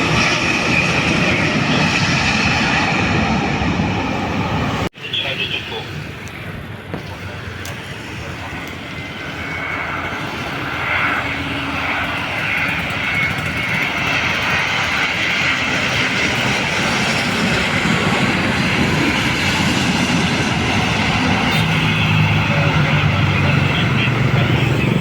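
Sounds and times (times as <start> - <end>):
airliner engines approaching: 0.0 - 25.0.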